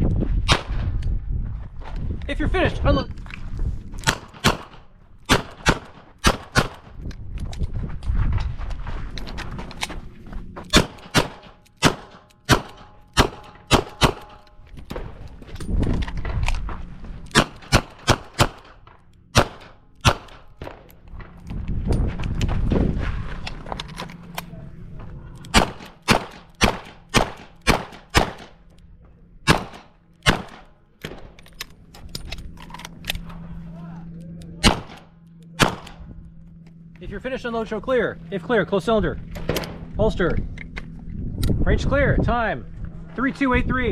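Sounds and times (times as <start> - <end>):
low rumble: 0.0 - 43.9
revolver gunshots: 4.0 - 7.0, 10.7 - 15.2, 17.3 - 21.0, 25.5 - 28.7, 29.4 - 31.4, 34.6 - 36.1.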